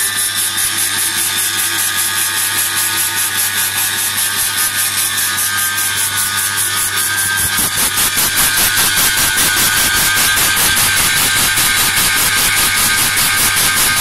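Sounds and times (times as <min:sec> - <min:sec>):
machine whine: 0:00.0 - 0:14.0
pulsing hiss: 0:07.2 - 0:14.0.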